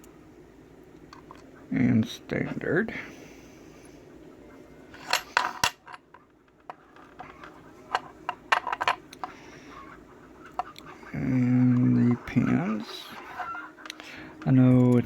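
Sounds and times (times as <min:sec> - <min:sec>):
metal lock parts clinking: 0:04.9 - 0:09.3.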